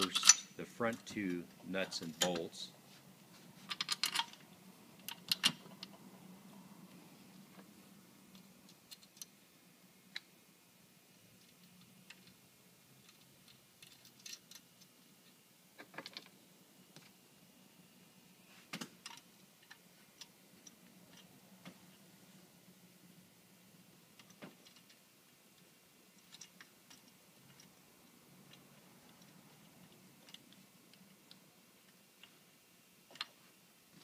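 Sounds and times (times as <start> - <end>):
small metal hardware clicking: 0.0 - 0.5.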